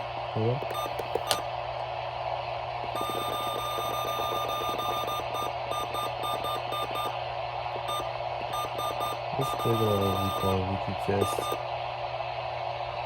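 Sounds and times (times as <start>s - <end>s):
low mains hum: 0.0s - 13.0s.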